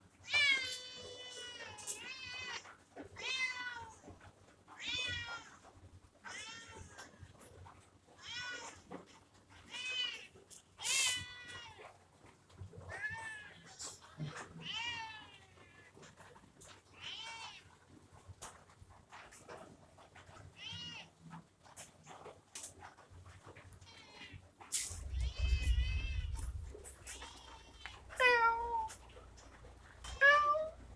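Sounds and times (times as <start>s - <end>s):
kitten meowing: 25.0s - 29.0s, 30.1s - 30.8s.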